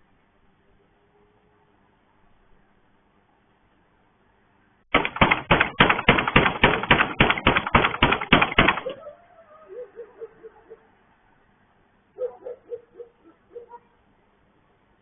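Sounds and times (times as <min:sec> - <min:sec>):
banging hard on a gate: 0:04.9 - 0:09.0.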